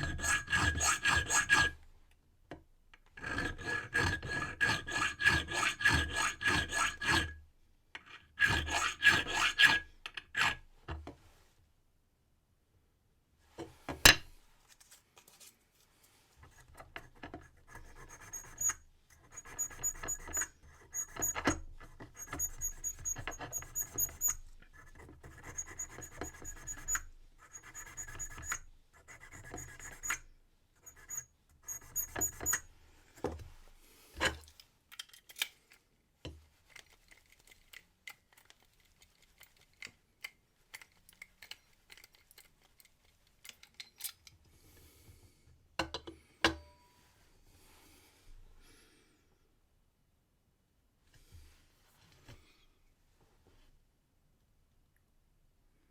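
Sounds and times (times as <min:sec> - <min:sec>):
file rasping on brass key: 0:00.0 - 0:01.8, 0:03.2 - 0:07.4, 0:08.4 - 0:10.6, 0:16.5 - 0:30.2, 0:30.8 - 0:32.7.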